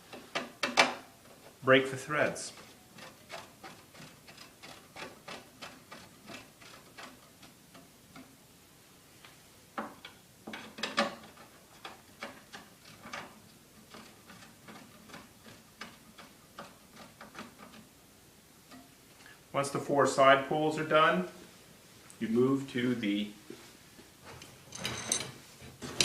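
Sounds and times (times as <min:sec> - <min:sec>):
poles clicking and tapping: 0:02.6 - 0:08.4, 0:09.2 - 0:17.9, 0:18.6 - 0:19.0.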